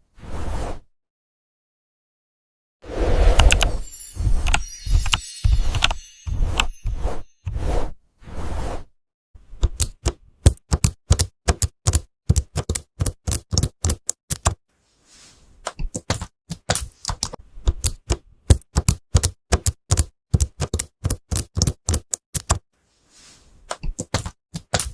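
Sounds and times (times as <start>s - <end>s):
keyboard key clicks: 9.8s - 14.6s, 16.0s - 22.6s.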